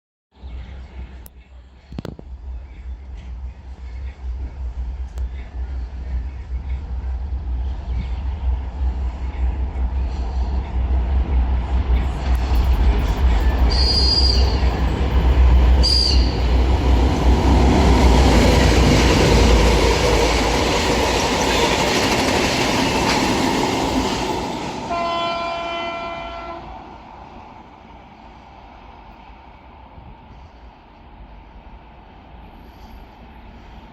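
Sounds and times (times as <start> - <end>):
diesel locomotives passing: 0.4 - 33.9
train horn: 13.6 - 14.8, 15.4 - 16.6, 24.8 - 26.8.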